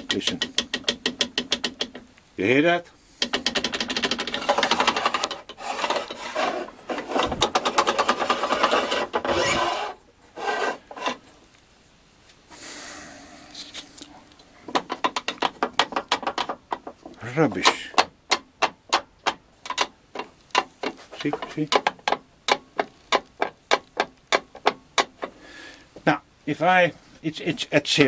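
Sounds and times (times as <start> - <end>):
miter gauge scraping and rattling: 3.1 - 11.4, 13.5 - 25.4.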